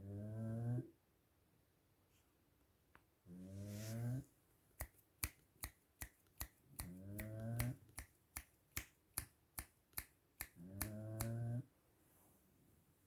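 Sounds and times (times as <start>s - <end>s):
dog snoring: 0.0s - 0.9s, 3.3s - 4.3s, 7.0s - 7.8s, 10.6s - 11.7s
regular clicking: 4.8s - 11.4s.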